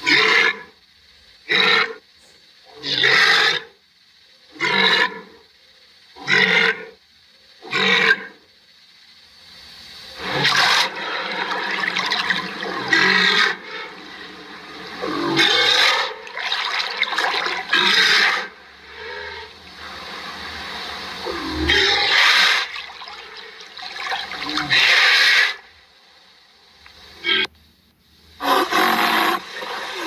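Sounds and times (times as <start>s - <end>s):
rhinoceros harsh calls: 10.2s - 25.7s, 27.0s - 27.5s, 28.4s - 30.0s
rushing breathy noise: 17.1s - 24.6s.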